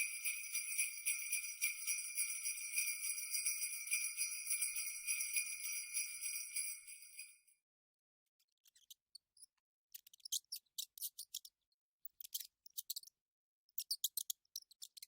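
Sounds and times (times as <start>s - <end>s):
small bells jingling: 0.0s - 7.4s.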